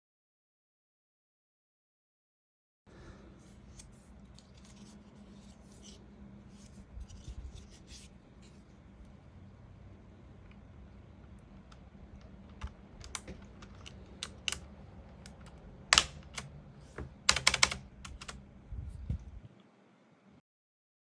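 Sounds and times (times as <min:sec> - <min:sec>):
mechanical keyboard keys clicking: 0:11.2 - 0:18.4.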